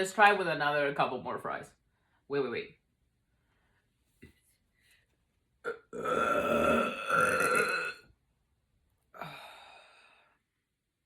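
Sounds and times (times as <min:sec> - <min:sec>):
woman belching: 0:05.7 - 0:08.0.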